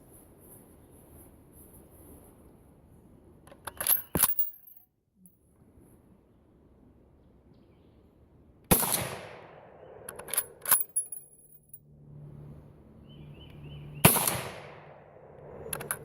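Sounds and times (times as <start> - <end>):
rifle action metallic clicks: 3.5 - 4.8, 10.1 - 11.3, 15.7 - 16.0
rifle shots with echo: 8.7 - 10.7, 14.0 - 15.8.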